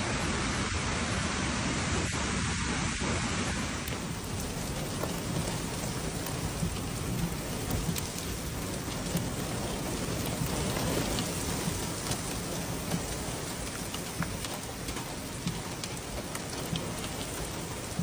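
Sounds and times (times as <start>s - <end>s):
steady rain hiss: 0.0s - 18.0s
rain drop impacts: 3.5s - 18.0s.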